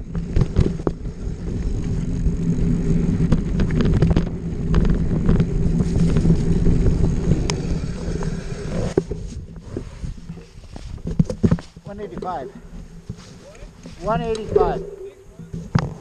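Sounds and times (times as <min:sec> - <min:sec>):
motorcycle engine running: 0:00.0 - 0:09.4
wind on microphone: 0:00.0 - 0:16.0.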